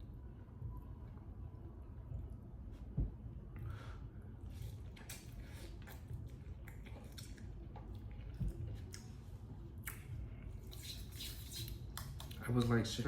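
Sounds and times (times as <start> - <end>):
wet chewing sounds: 4.4 - 12.4.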